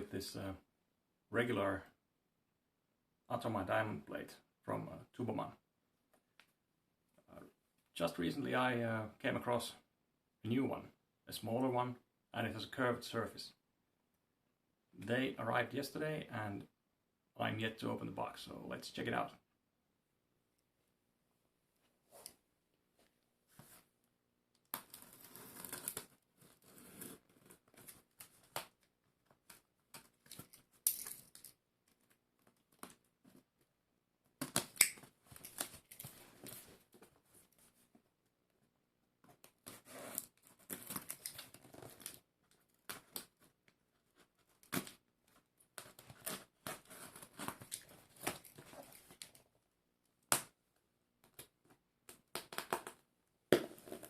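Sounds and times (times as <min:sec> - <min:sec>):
cardboard tearing: 0:24.9 - 0:27.9
crackly rustling of packing: 0:35.1 - 0:38.0.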